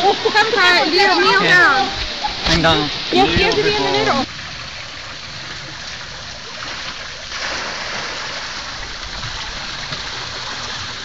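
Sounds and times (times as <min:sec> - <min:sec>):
waterfall hissing: 0:00.0 - 0:04.7.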